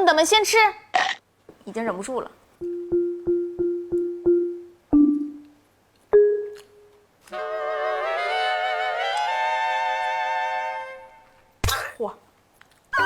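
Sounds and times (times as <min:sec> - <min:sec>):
repeated struck notes: 0:02.6 - 0:05.6.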